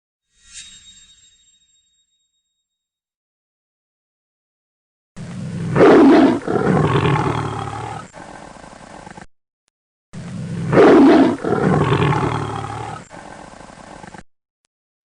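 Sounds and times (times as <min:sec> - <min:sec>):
big cat growl: 0:05.2 - 0:09.3, 0:10.2 - 0:14.2
big cat roaring: 0:05.2 - 0:09.3, 0:10.2 - 0:14.2.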